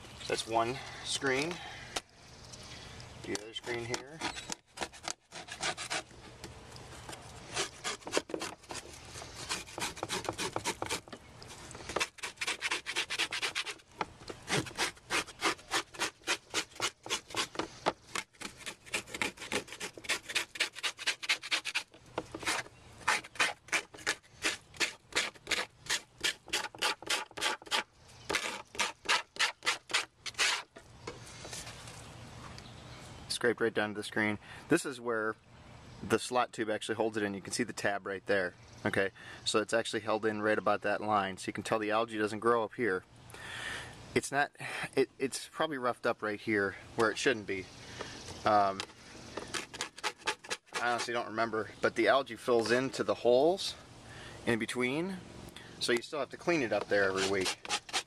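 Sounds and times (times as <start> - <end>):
scraper rubbing screen: 7.4 - 17.7, 18.4 - 30.7, 49.5 - 51.1, 57.0 - 58.0.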